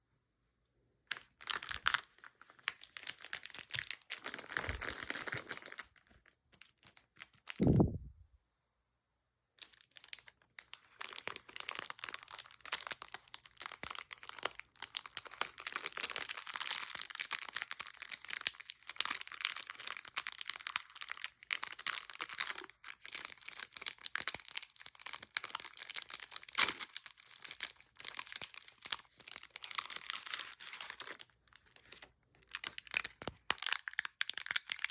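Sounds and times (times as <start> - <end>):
plastic wrappers crinkling: 1.1 - 7.7, 9.6 - 34.9
low thump: 7.6 - 8.2.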